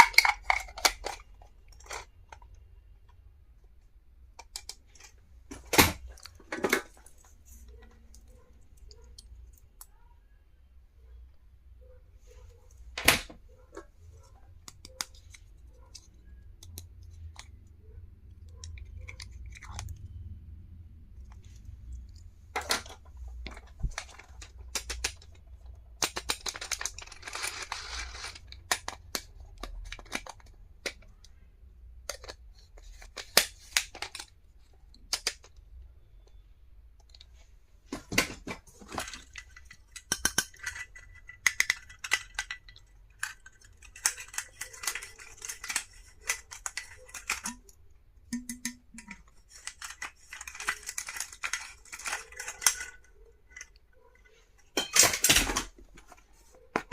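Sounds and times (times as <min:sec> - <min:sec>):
small items clicking and tapping: 0:00.0 - 0:03.2, 0:12.9 - 0:20.2, 0:21.2 - 0:56.9
plastic packaging crinkling: 0:26.1 - 0:29.0, 0:49.0 - 0:53.7.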